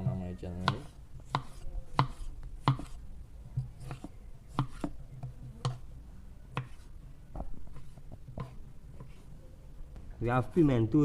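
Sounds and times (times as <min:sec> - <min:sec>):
knife chopping on cutting board: 0:00.6 - 0:03.0, 0:03.8 - 0:05.0, 0:06.6 - 0:06.8.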